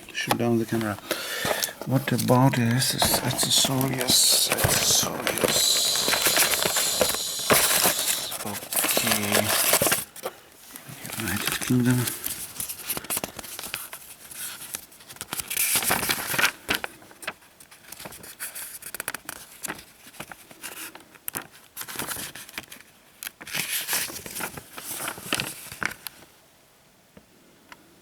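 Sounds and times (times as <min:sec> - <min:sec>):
rustling and crinkling handling noise: 0:00.0 - 0:26.4.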